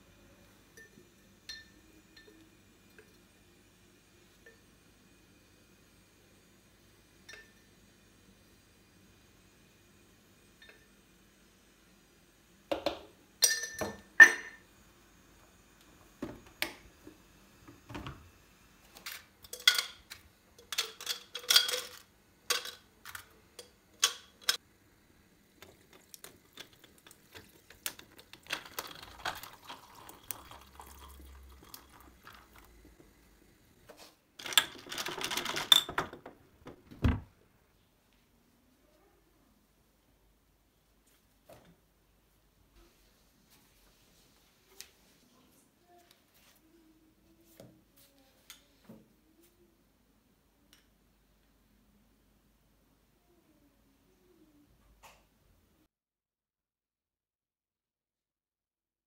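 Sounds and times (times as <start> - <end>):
dishes and cutlery clinking: 13.4 - 14.6, 19.4 - 24.6
liquid being poured: 25.5 - 33.2.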